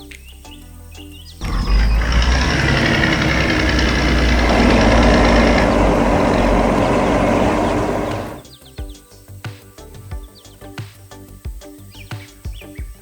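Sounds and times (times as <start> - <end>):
heavy vehicle engine rumbling: 1.4 - 8.4.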